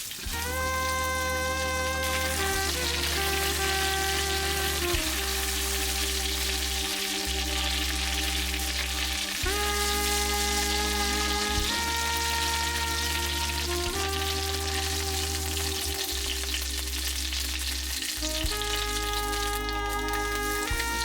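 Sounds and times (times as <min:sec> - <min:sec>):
background music of sustained chords: 0:00.3 - 0:21.0
food sizzling in a frying pan: 0:14.9 - 0:18.3.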